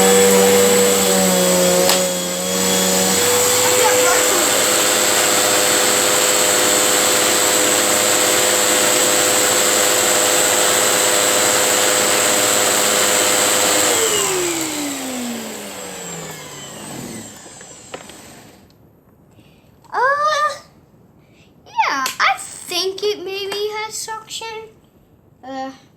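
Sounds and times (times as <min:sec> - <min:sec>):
vacuum cleaner motor whine: 0:00.0 - 0:18.7.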